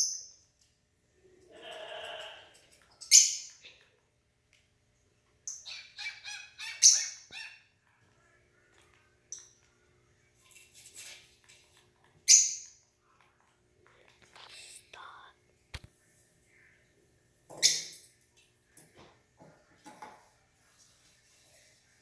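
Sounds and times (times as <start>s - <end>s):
bird chirping and squawking: 5.5s - 7.7s.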